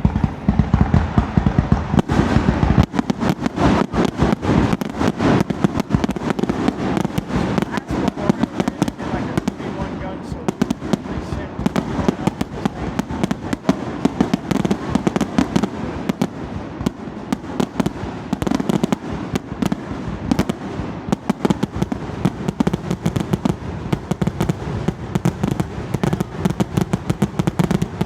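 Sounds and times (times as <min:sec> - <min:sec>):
low rumble: 0:00.0 - 0:03.0
fireworks bangs: 0:00.0 - 0:28.0.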